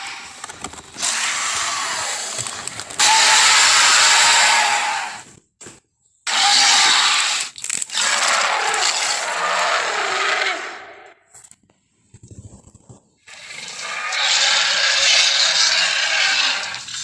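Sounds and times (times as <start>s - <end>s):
dinosaur roar: 1.0s - 5.2s, 6.3s - 11.2s, 13.3s - 17.0s.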